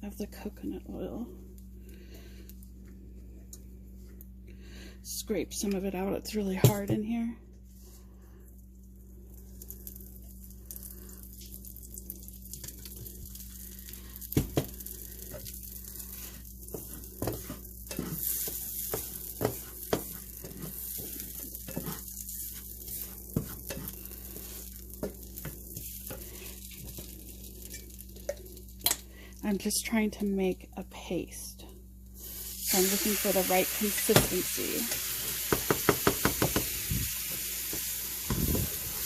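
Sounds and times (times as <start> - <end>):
paste sizzling in a pan: 9.3 - 29.6, 32.1 - 39.0
utensil scraping a pan: 15.2 - 28.5.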